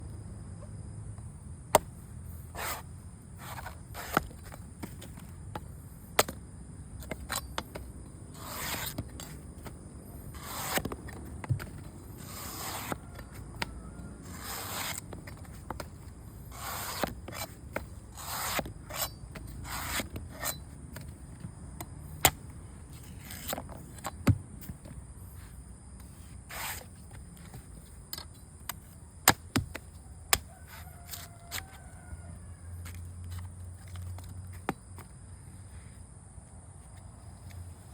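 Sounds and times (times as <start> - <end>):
steady low hum: 0.0 - 30.8
scraping strokes: 1.7 - 21.2, 22.1 - 27.9, 30.3 - 32.0.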